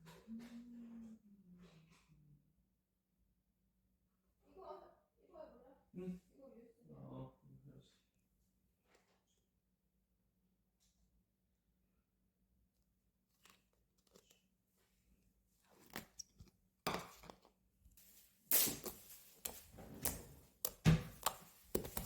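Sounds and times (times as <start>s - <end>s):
slime squishing with sticky clicks: 18.5s - 22.0s.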